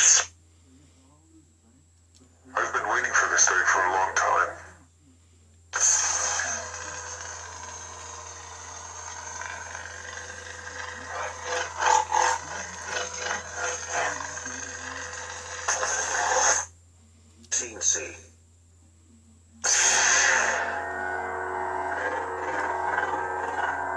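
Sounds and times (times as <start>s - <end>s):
lightsaber blade hum: 19.6s - 23.9s.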